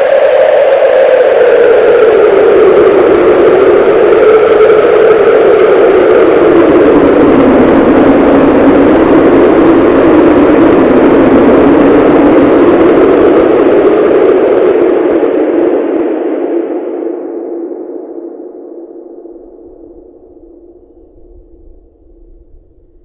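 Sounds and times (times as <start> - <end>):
cartoon wind rushing: 19.5 - 23.0.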